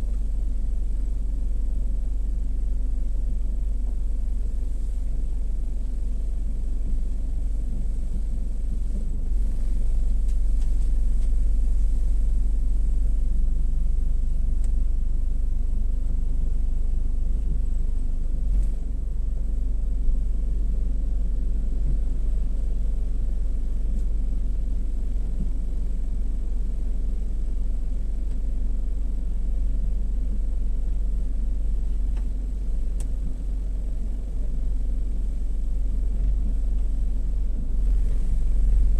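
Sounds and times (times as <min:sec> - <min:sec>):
car wash rumbling: 0:00.0 - 0:38.9.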